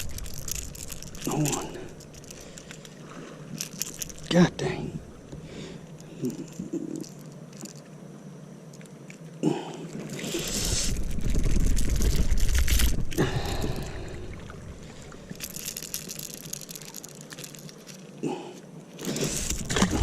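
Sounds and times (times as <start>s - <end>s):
wind gusting on microphone: 10.4s - 14.8s.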